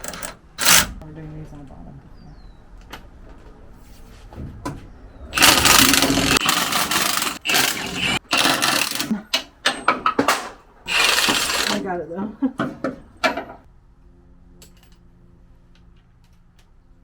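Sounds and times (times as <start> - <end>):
electric ratchet clicking: 0.0 - 1.0, 5.4 - 9.1, 10.9 - 11.8
electric ratchet running: 0.0 - 1.0, 5.4 - 9.1, 10.9 - 11.8.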